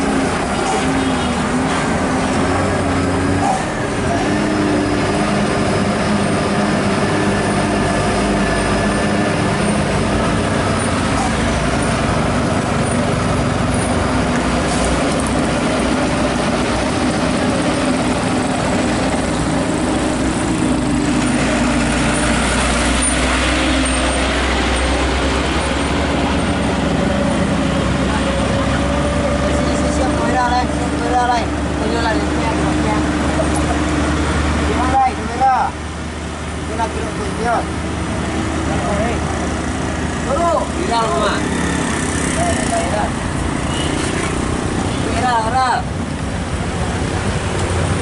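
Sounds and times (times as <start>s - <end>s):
truck diesel engine running: 0.0s - 48.0s.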